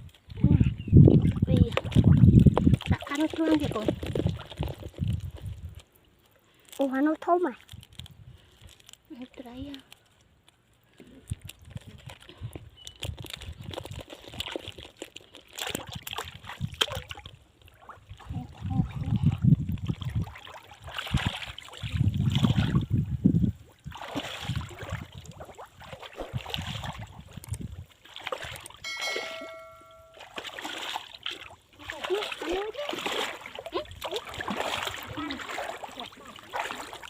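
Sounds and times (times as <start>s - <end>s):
pond water splashing: 1.1s - 10.2s, 10.8s - 23.0s, 23.6s - 37.0s.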